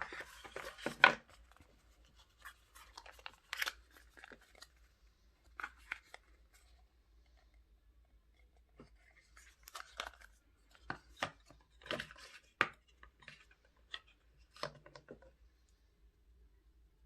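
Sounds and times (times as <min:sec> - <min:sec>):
packaging crinkling and tearing: 0:00.0 - 0:04.8.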